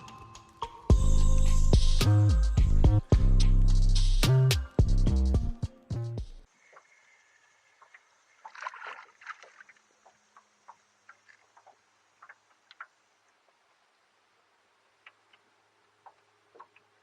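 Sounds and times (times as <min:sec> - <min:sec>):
water lapping against boat: 0:07.8 - 0:13.0.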